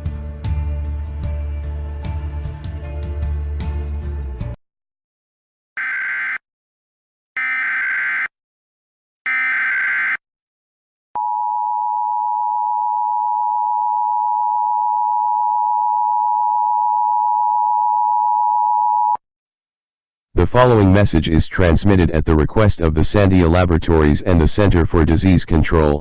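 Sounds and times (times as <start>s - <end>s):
data burst screech: 5.8s - 6.4s, 7.4s - 8.3s, 9.3s - 10.2s.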